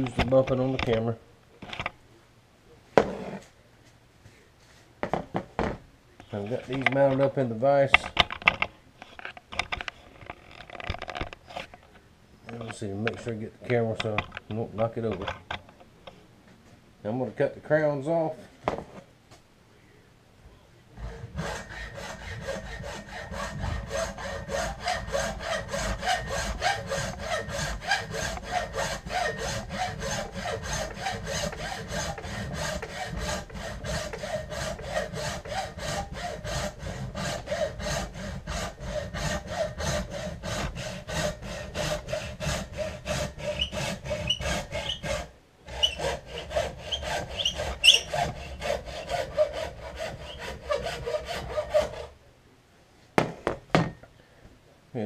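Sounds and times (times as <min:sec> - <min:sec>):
hand saw cutting antler: 0:21.0 - 0:52.2.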